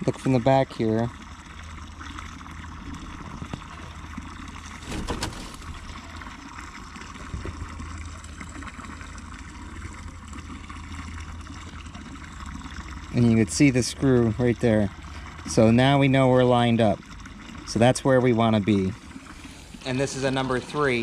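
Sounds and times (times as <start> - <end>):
trickle of running water: 0.0 - 21.0
handling noise: 4.8 - 5.9.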